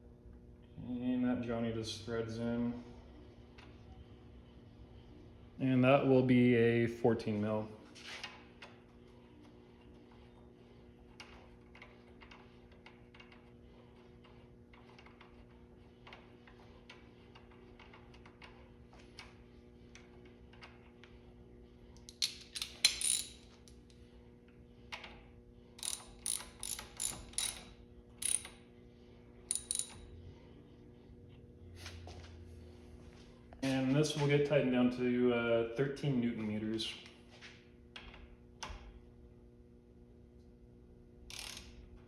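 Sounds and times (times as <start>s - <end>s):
hand ratchet clicking: 22.1s - 23.4s, 25.8s - 28.6s, 29.5s - 30.0s, 41.3s - 41.8s.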